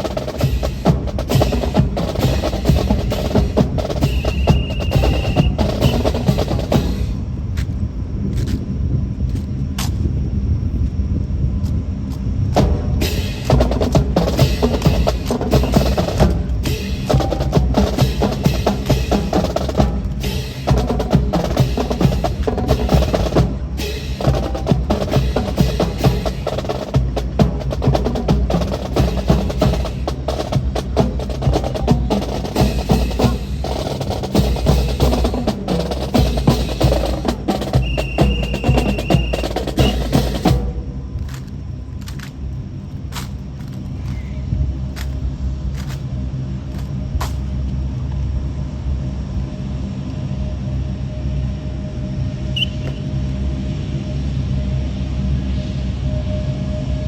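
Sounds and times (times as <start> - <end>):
high steady tone: 36.6 - 41.3.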